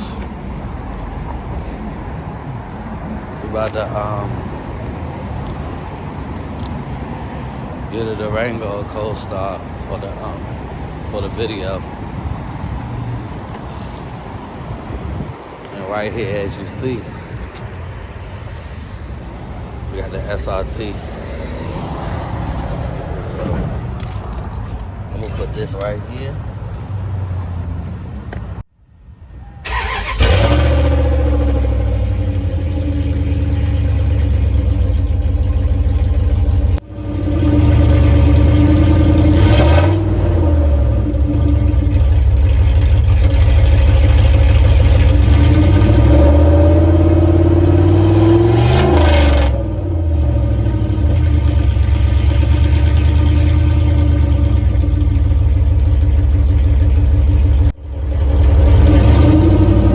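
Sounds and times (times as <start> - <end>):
loud car engine idling and revving: 0.0 - 28.6, 29.7 - 59.9.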